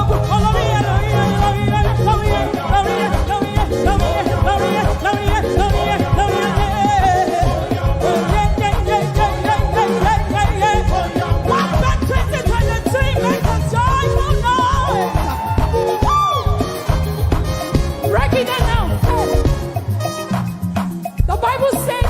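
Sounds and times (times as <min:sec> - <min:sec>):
person singing lead: 0:00.0 - 0:16.9
live band playing upbeat music: 0:00.0 - 0:22.0.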